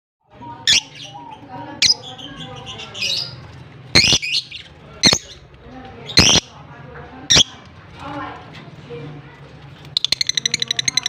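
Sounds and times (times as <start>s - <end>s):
lovebird high chattering twitters: 4.0s - 5.2s, 6.2s - 6.5s, 7.3s - 7.5s.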